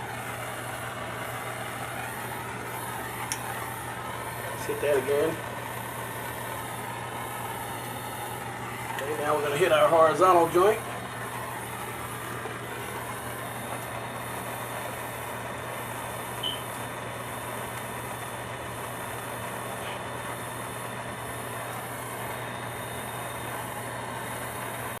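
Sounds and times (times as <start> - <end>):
torch flame hissing: 0.0 - 25.0
faint high chirp: 16.4 - 16.7.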